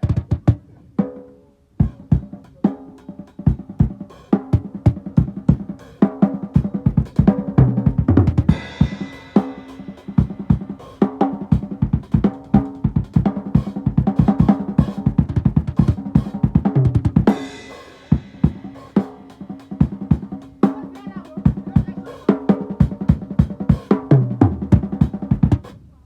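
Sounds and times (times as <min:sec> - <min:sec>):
drum kit playing groove: 0:00.0 - 0:25.9
cymbal crash: 0:08.5 - 0:11.0, 0:17.3 - 0:19.4.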